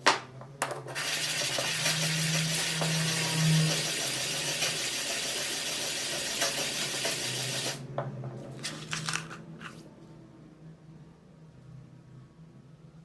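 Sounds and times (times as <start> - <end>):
blade scraping on abrasive: 0.9 - 7.8.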